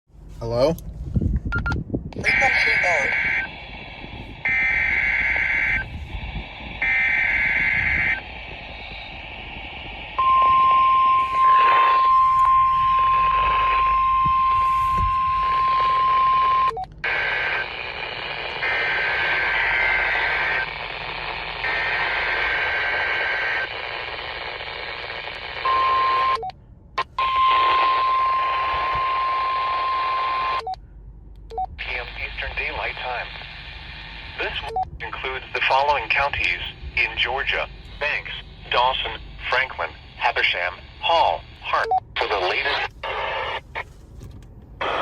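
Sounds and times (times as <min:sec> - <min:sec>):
radio receiver hiss: 0:02.2 - 0:16.1, 0:17.0 - 0:26.3, 0:27.5 - 0:30.4, 0:31.8 - 0:44.0, 0:44.8 - 0:45.0
steady warning alarm tone: 0:02.2 - 0:21.0, 0:27.1 - 0:30.8
warbling digital data tones: 0:04.2 - 0:16.8.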